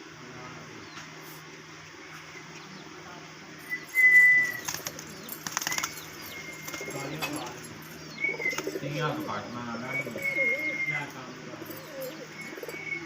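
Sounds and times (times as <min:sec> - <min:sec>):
parrot whistling: 0:03.7 - 0:04.9, 0:05.6 - 0:08.9, 0:09.8 - 0:11.2, 0:11.8 - 0:13.0
wings flapping: 0:03.9 - 0:09.0.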